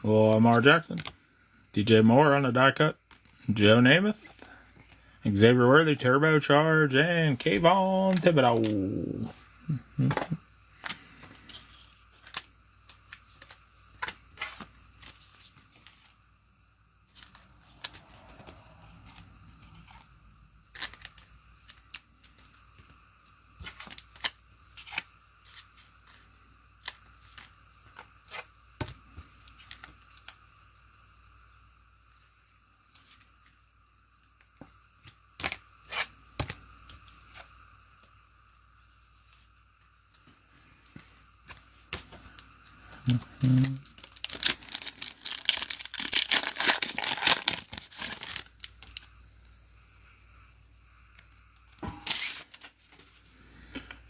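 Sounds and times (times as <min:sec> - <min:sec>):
pack wrappers tearing: 0:20.7 - 0:22.3, 0:23.7 - 0:25.1, 0:43.4 - 0:49.1, 0:52.0 - 0:52.9.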